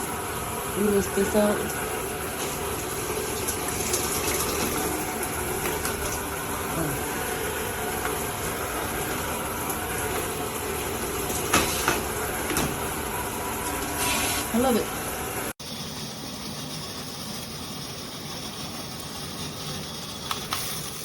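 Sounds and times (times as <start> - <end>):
water spraying from shower head: 0.1 - 14.8.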